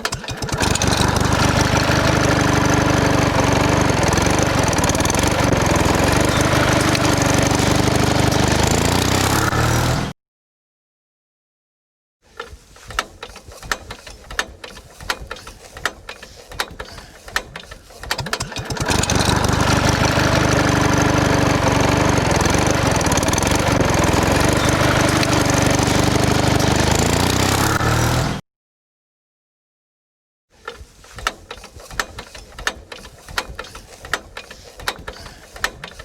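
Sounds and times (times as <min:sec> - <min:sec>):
engine running steadily: 0:00.2 - 0:09.6, 0:16.4 - 0:27.8
irregular clicks and knocks: 0:12.3 - 0:19.2, 0:30.6 - 0:36.0.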